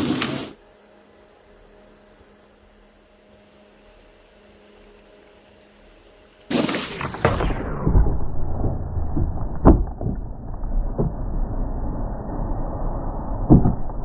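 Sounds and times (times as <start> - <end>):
snowboard scraping over snow: 0.0 - 0.6, 6.5 - 7.8.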